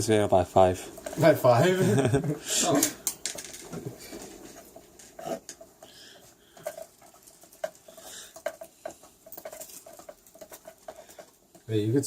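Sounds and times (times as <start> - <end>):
small objects clicking on hard surface: 2.7 - 3.8.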